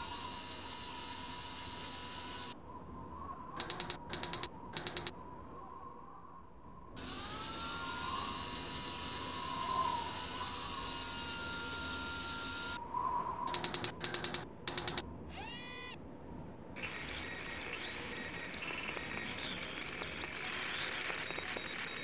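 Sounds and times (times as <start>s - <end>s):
electric motor whine: 0.0s - 2.6s, 7.0s - 12.8s, 15.3s - 16.0s, 16.8s - 22.0s
rapid ratcheting clicks: 3.6s - 5.1s, 7.0s - 12.8s, 13.5s - 16.0s.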